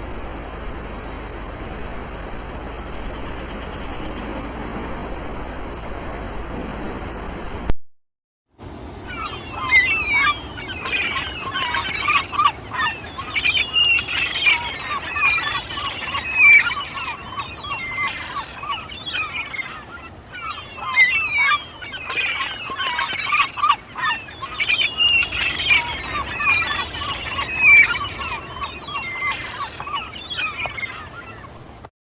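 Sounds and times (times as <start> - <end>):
flock of birds chirping: 0.0 - 7.3, 8.9 - 31.8.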